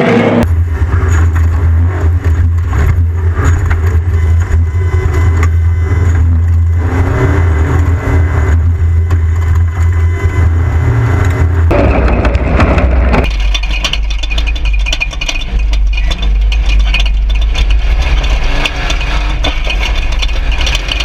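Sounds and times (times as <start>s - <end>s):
off-road vehicle engine rumble: 0.0s - 21.0s
irregular rattles: 11.1s - 21.0s.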